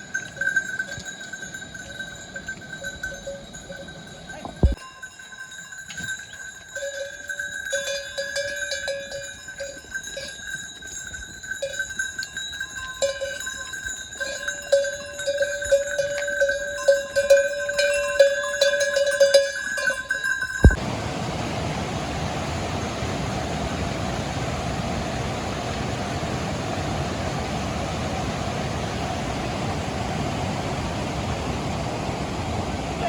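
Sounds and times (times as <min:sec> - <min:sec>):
metal livestock bells clanking: 0:00.0 - 0:20.8.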